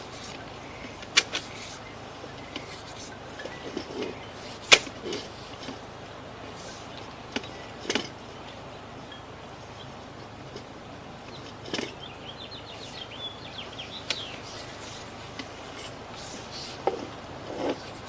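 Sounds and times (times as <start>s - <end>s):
sharp clicks and knocks: 0.0s - 5.8s, 14.0s - 18.0s
steady hiss: 0.0s - 7.7s, 12.6s - 18.0s.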